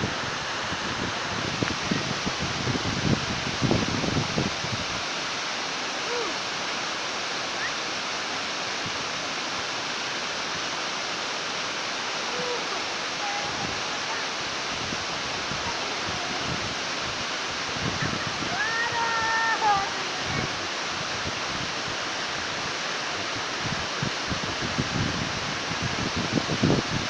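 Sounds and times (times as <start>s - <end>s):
wind buffeting microphone: 0.0s - 5.2s, 13.2s - 27.0s
waterfall rushing: 0.0s - 27.0s.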